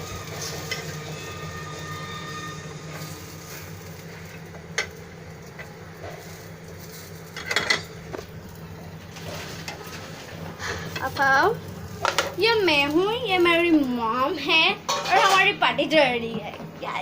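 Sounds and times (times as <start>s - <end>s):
potatoes sizzling in oil: 0.0s - 16.5s.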